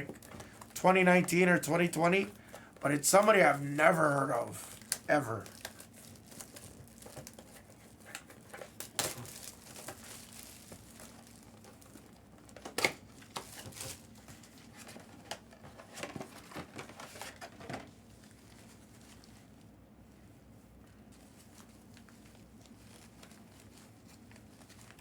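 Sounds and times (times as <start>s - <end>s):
plastic wrap crinkling and tearing: 0.0s - 14.2s, 21.2s - 25.0s.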